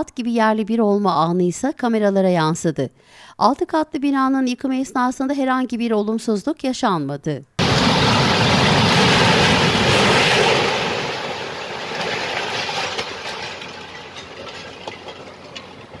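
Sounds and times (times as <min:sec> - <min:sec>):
building collapsing crash: 0:07.6 - 0:16.0
debris clattering: 0:07.6 - 0:16.0.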